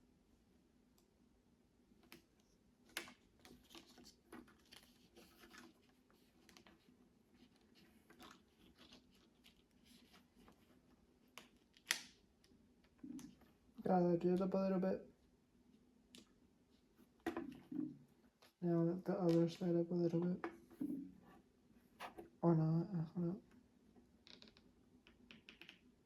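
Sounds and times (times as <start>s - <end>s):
rustling: 2.2s - 14.4s
plastic pieces clicking: 24.2s - 25.9s.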